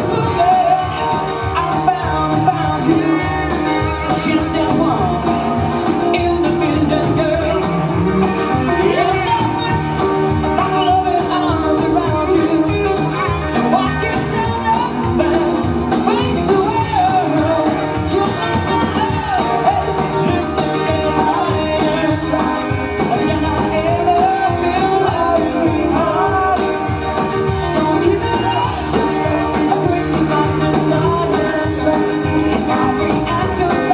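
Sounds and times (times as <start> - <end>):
lead singing voice: 0.0 - 33.9
live band music: 0.0 - 33.9
steady drum beat: 0.0 - 33.9.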